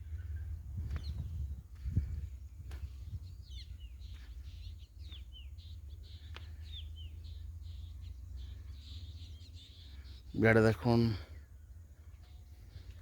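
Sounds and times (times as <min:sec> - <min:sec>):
steady low rumble: 0:00.0 - 0:08.9
small birds chirping: 0:00.0 - 0:13.0.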